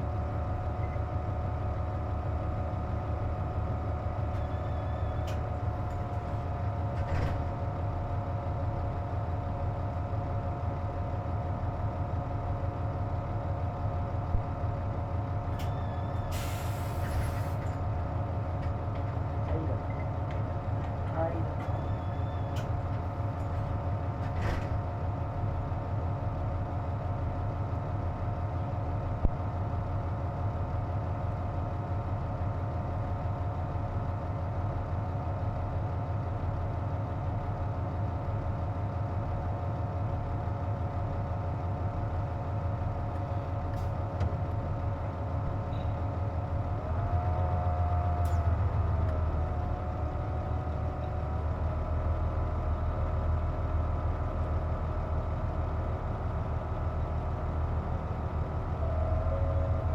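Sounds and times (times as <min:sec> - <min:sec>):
bus engine drone: 0:00.0 - 0:59.9.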